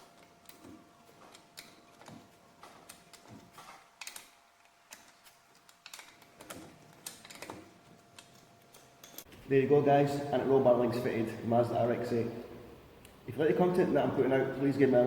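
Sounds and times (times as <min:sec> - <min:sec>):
hand tools clicking and tapping: 0:00.0 - 0:09.3
faint steady hum: 0:00.0 - 0:15.0.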